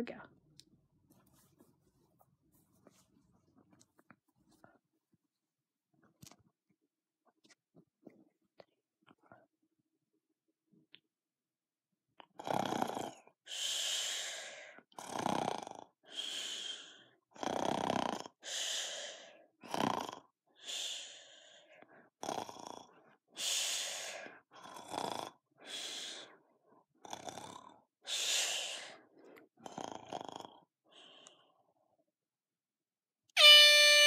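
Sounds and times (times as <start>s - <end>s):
person snoring: 12.3s - 21.2s, 22.2s - 22.9s, 23.7s - 26.3s, 27.0s - 29.0s, 29.6s - 31.2s.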